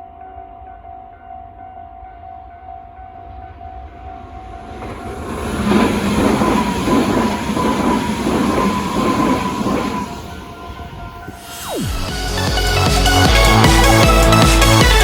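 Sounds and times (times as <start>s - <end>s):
high whine of passing train: 0.0s - 15.0s
train wheels clattering over joints: 4.6s - 10.9s.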